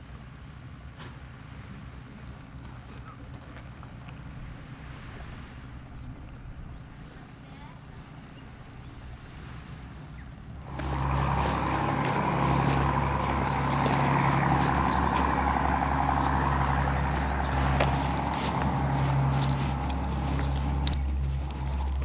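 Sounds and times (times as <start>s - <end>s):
motorcycle engine running: 10.6s - 22.0s
rushing noise: 10.6s - 22.0s.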